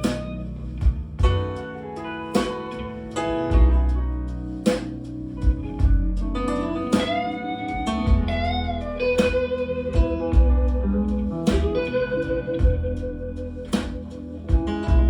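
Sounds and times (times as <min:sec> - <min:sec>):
bass line: 0:00.0 - 0:01.6, 0:03.3 - 0:15.0
drum hits: 0:00.0 - 0:01.6, 0:04.7 - 0:06.2, 0:08.1 - 0:08.6, 0:11.5 - 0:13.0, 0:13.8 - 0:15.0
blues guitar sliding notes: 0:00.0 - 0:15.0.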